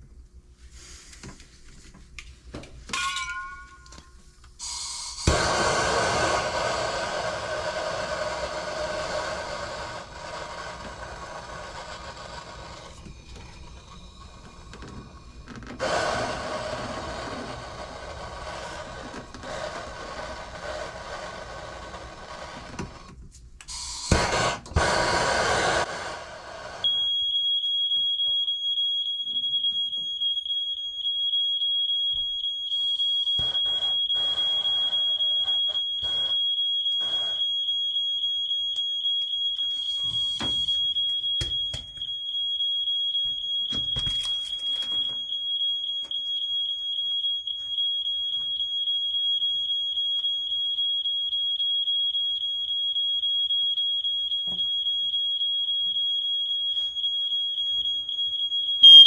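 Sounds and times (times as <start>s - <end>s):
high-pitched electronic alarm tone: 26.8s - 59.0s.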